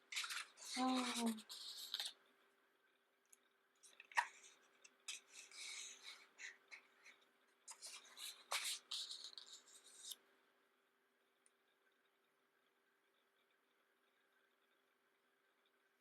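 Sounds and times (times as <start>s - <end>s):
paper pages rustling: 0.0s - 2.2s, 3.8s - 7.1s, 7.7s - 10.2s.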